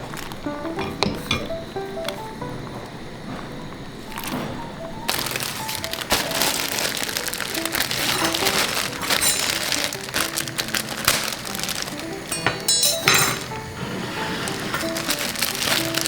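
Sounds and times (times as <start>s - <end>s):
background music: 0.0s - 16.0s
food sizzling in frying pan: 4.0s - 16.0s.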